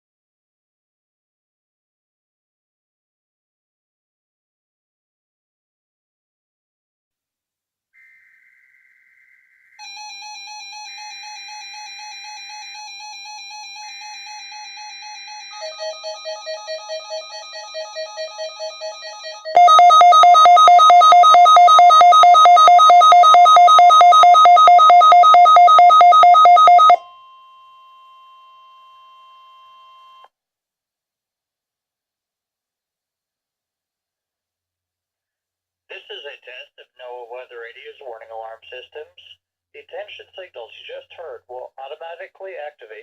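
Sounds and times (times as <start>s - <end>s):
loud pulsing alarm: 9.8s - 30.3s
steady warning alarm tone: 9.8s - 30.3s
weather alert radios beeping: 19.5s - 27.2s.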